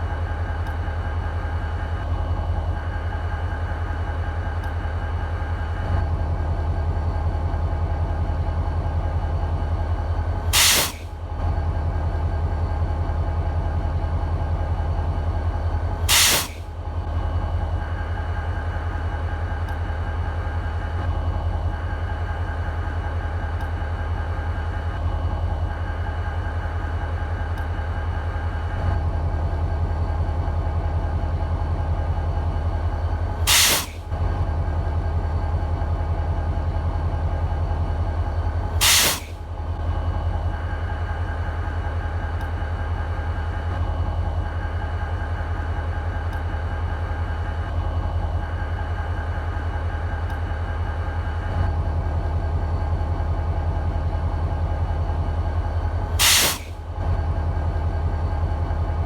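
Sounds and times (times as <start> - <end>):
diesel locomotive idling: 0.0 - 59.0.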